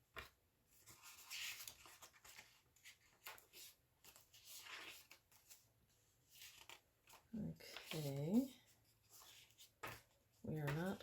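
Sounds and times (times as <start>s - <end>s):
paper pages flipping: 0.1s - 5.7s, 6.3s - 11.0s.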